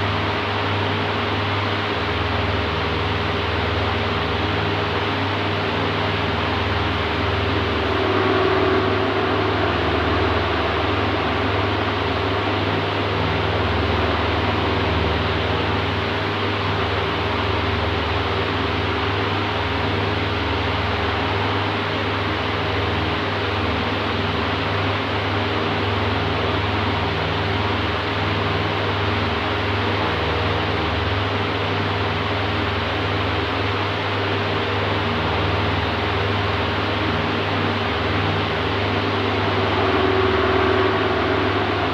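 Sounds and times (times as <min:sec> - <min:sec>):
electric fan air rush: 0:00.0 - 0:41.9
fan motor hum: 0:00.0 - 0:41.9
faint steady tone: 0:06.2 - 0:17.7, 0:37.9 - 0:41.9.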